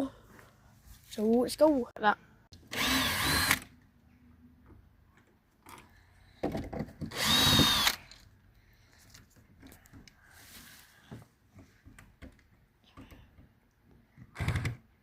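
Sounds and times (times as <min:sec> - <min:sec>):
power drill whining: 0:02.7 - 0:03.7, 0:07.1 - 0:08.2.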